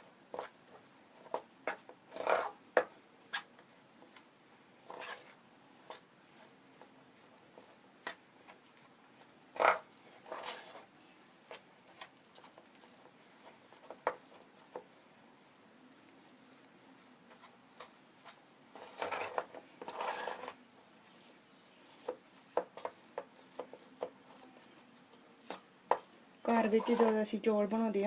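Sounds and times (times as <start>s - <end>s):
paste scraping and squelching: 4.8s - 6.5s, 7.2s - 27.4s.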